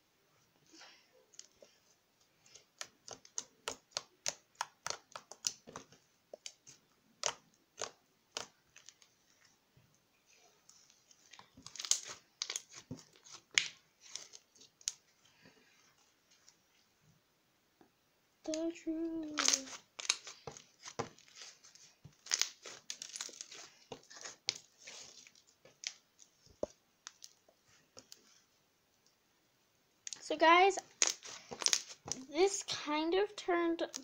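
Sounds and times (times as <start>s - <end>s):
slime squished by hand: 11.2s - 15.0s, 30.8s - 32.2s.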